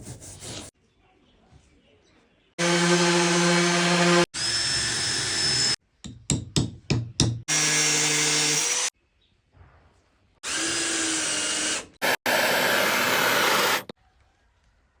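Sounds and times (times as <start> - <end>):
electric power tool running: 2.6 - 5.8, 10.4 - 13.9.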